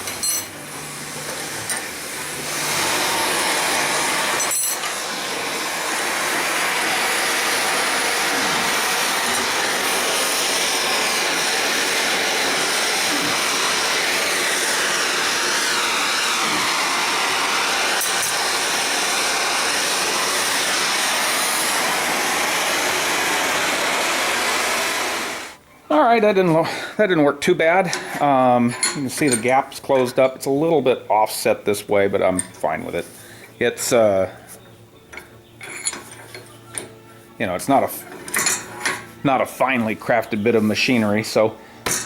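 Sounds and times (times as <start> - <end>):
cutting torch flame hissing: 0.0 - 25.6, 37.4 - 42.0.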